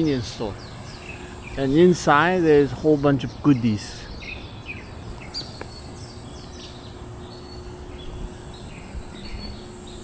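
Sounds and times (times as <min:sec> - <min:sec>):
birds chirping: 0:00.0 - 0:10.0
cicada chorus: 0:00.0 - 0:10.0.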